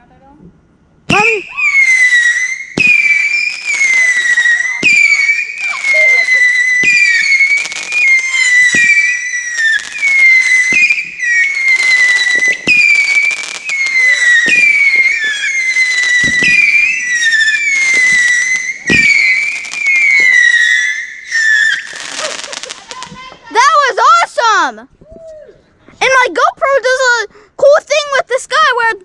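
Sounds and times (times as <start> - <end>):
shrill firework whistles: 1.1 - 23.2
firework cracks: 1.1 - 23.8.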